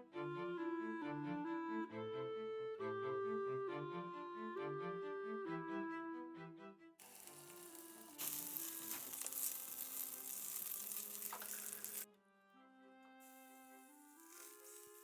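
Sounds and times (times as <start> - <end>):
instrumental background music: 0.0 - 15.0
food sizzling in a pan: 7.0 - 12.1, 13.2 - 15.0.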